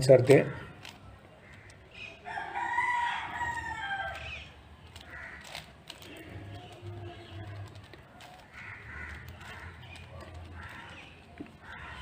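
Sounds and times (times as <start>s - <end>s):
rooster crowing: 2.3s - 4.2s.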